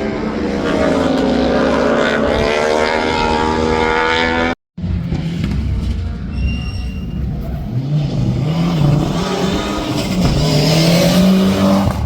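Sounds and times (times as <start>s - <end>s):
engine revving: 0.0s - 4.6s, 7.6s - 12.0s.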